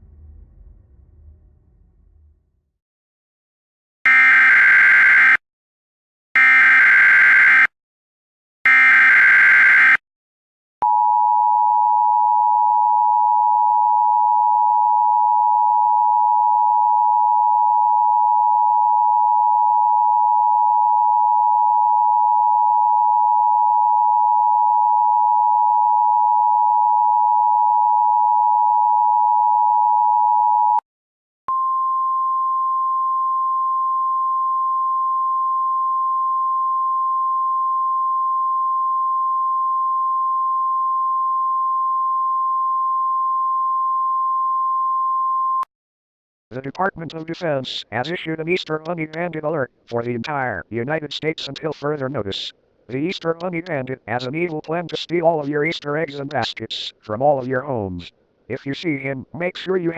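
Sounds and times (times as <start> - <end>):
single steady tone: 31.5 - 45.7.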